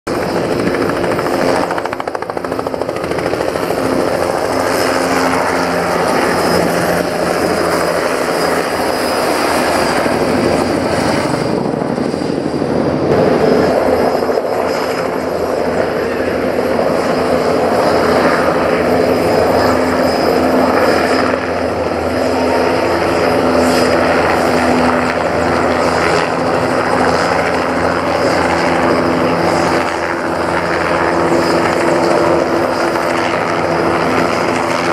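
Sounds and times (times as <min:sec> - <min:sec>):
helicopter turbine and rotor: 0:00.1 - 0:34.9.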